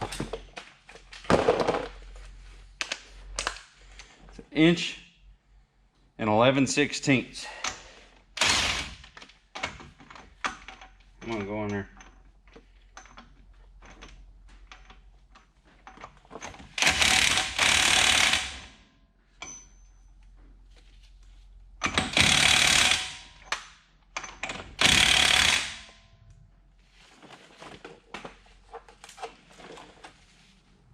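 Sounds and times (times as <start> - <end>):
tool handling clicks and knocks: 0.0 - 2.1, 9.0 - 16.8, 19.4 - 20.9, 23.4 - 26.4, 27.3 - 30.2
impact wrench hammering: 21.8 - 26.0.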